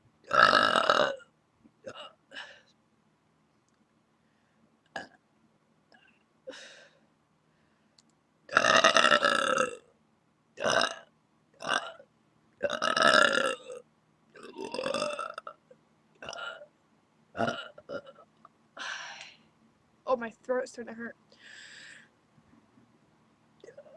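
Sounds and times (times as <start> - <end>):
person burping loudly: 0.3 - 2.2, 5.0 - 5.2, 8.5 - 9.8, 10.6 - 13.8, 14.4 - 16.7, 17.4 - 18.2.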